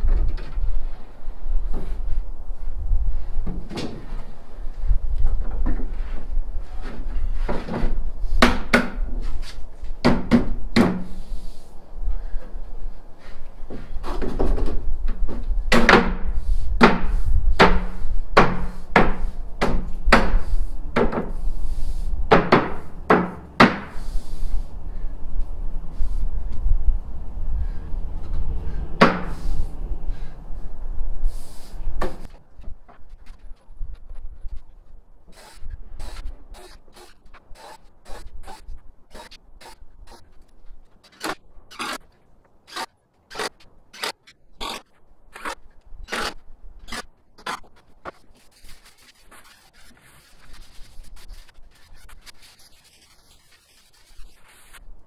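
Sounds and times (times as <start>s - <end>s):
low rumble: 24.1s - 31.3s.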